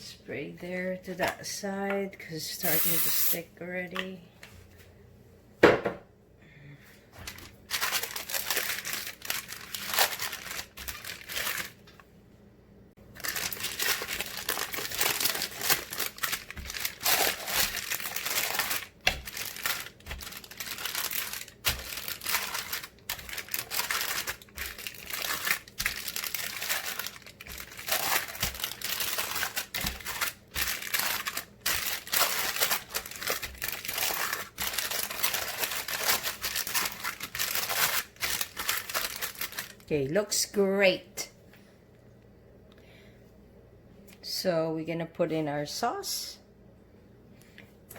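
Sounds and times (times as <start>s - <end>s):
plastic or paper crinkling: 7.2s - 11.9s, 13.1s - 39.9s.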